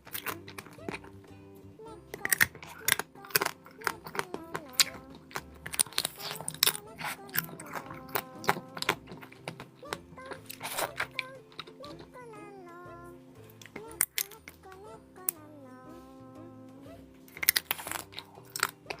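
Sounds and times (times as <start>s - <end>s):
crunchy bites and chewing: 0.0s - 1.4s, 2.1s - 12.2s, 17.3s - 19.0s
background music: 0.0s - 19.0s.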